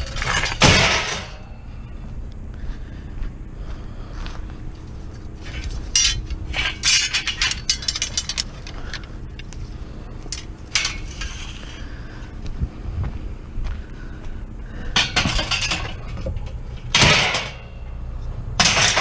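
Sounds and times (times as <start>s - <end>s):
steel scrap clanking: 0.0s - 1.7s, 5.4s - 9.1s, 10.3s - 11.8s, 14.9s - 17.8s, 18.6s - 19.0s
low rumble: 0.0s - 18.6s.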